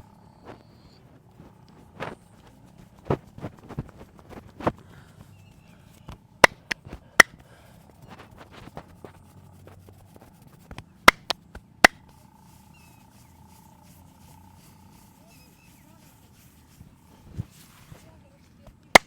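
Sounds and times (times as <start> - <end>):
hand strikes of massage: 1.9 - 4.8, 6.1 - 9.8, 10.5 - 12.2.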